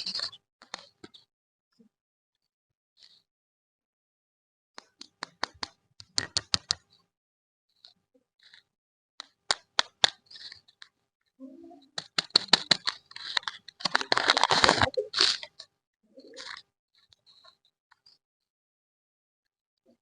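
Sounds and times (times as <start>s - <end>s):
plastic wrapper crinkling: 12.0s - 15.5s.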